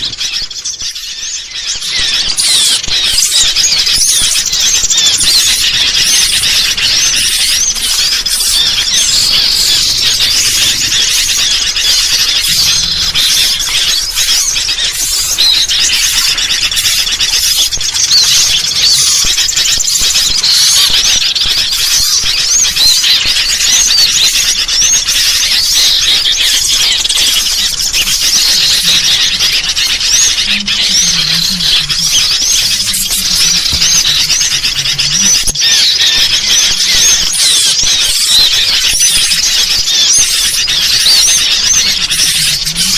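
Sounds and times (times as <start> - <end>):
bulbul calls: 0.0 - 42.9
small birds chirping: 0.0 - 42.9.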